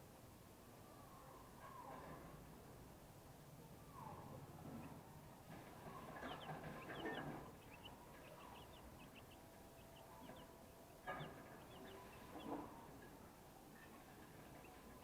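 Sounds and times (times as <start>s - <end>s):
chicks peeping: 4.2s - 15.0s.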